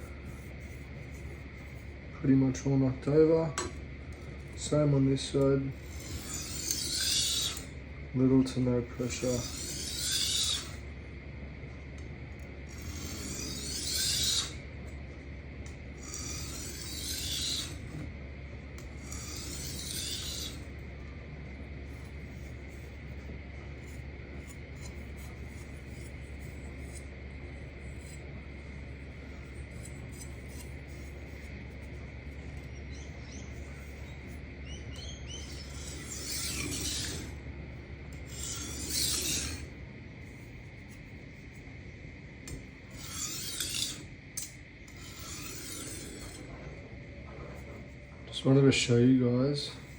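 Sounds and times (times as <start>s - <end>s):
knife rasping on sharpening plate: 5.8s - 7.7s, 9.1s - 10.8s, 12.7s - 14.6s, 16.0s - 18.0s, 19.0s - 20.7s, 35.0s - 37.3s, 38.3s - 39.7s, 42.9s - 46.4s.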